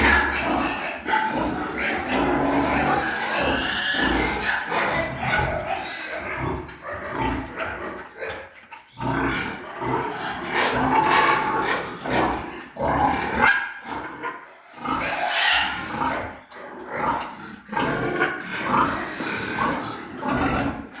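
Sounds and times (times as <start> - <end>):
high-pitched pig call: 0.0 - 6.4, 15.0 - 16.2
pigs grunting: 0.0 - 21.0.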